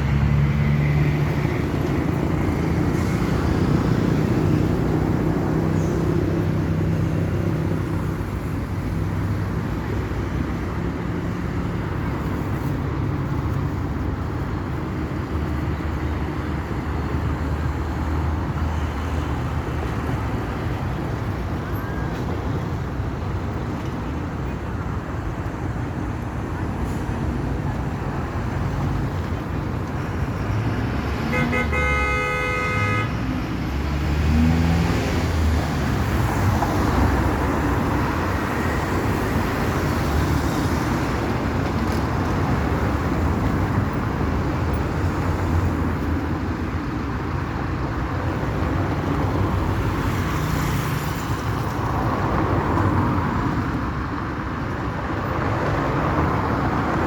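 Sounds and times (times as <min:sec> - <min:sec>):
vehicle horn blowing: 0:31.3 - 0:33.2.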